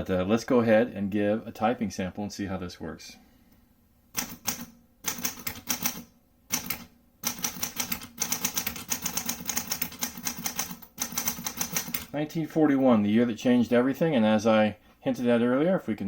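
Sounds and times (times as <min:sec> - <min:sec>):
manual typewriter keystrokes: 0:04.2 - 0:12.1.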